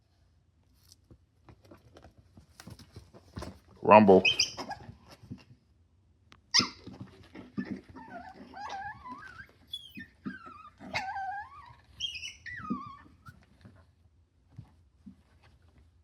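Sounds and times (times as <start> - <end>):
puppies whining: 6.6 - 13.7.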